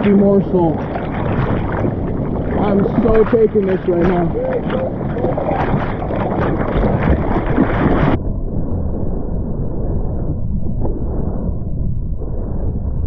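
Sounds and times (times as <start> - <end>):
surf: 0.0 - 8.2
wind buffeting microphone: 0.0 - 13.0.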